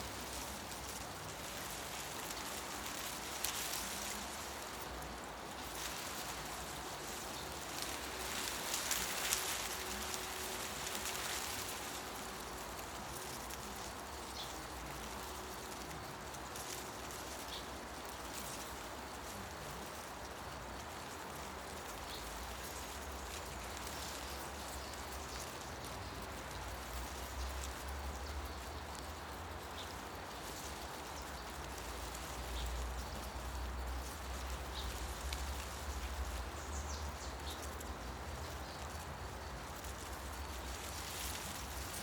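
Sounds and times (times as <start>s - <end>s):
wind rustling leaves: 0.0s - 42.0s.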